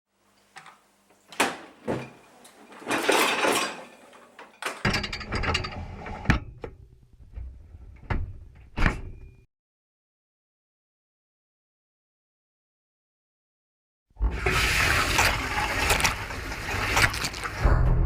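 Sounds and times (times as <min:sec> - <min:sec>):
low rumble: 0:17.6 - 0:18.0.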